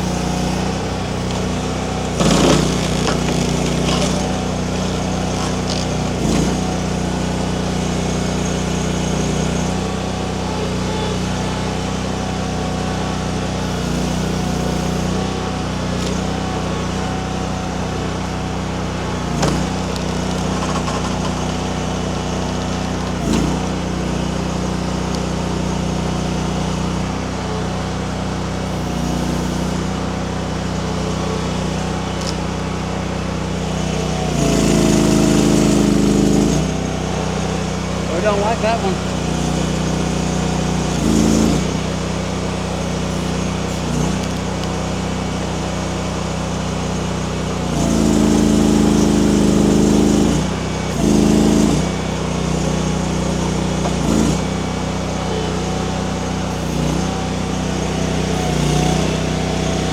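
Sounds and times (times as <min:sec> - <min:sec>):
small engine running: 0:00.0 - 0:59.9
sharp knocks of wood splitting: 0:00.3 - 0:06.6, 0:19.3 - 0:21.6, 0:53.7 - 0:54.4.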